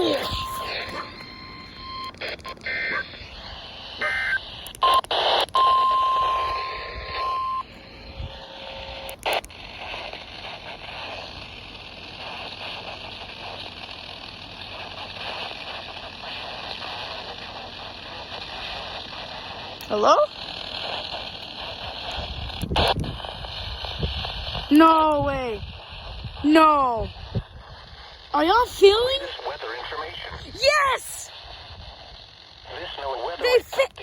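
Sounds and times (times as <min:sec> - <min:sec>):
digital data tone bursts: 0:00.0 - 0:05.0
steady warning alarm tone: 0:00.0 - 0:05.0
radio crackle: 0:00.0 - 0:34.0
radio static: 0:00.0 - 0:34.0.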